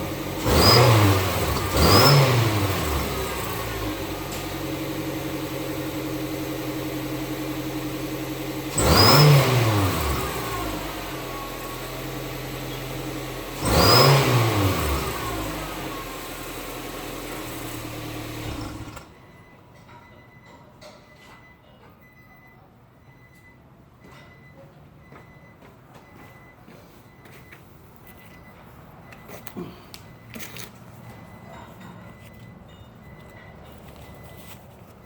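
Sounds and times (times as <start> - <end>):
car engine idling and revving: 0.0 - 19.5.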